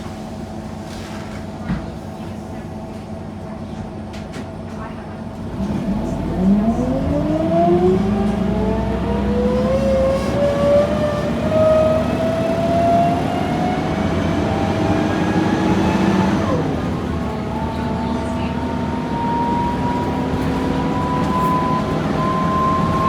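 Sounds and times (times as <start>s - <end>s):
railbus gearbox whine: 5.4s - 23.0s.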